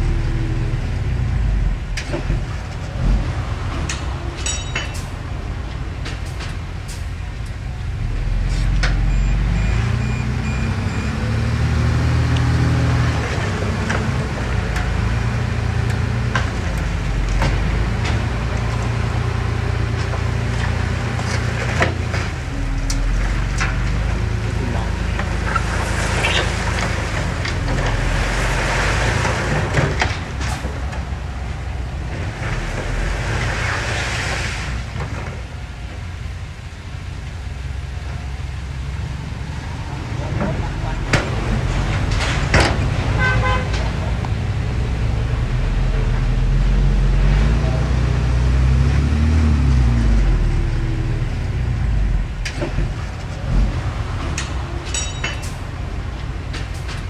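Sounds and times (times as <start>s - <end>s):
heavy diesel machinery running: 0.0s - 57.0s
sharp metallic clanks: 3.7s - 5.4s, 54.2s - 55.8s.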